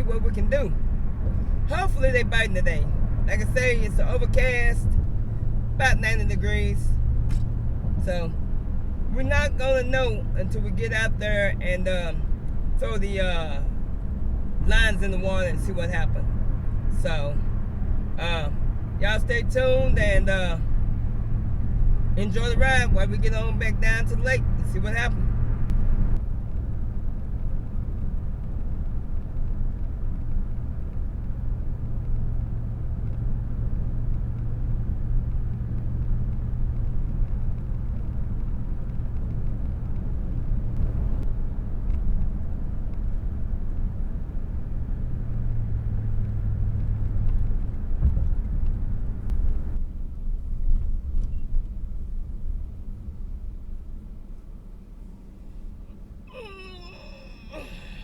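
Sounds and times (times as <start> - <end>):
car engine: 0.0 - 58.0
road rumble: 0.0 - 58.0.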